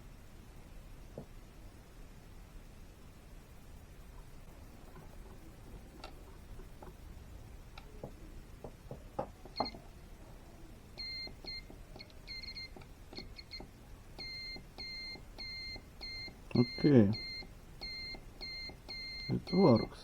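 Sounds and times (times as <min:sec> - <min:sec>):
multimeter beeping: 0:09.6 - 0:09.8, 0:11.0 - 0:20.0.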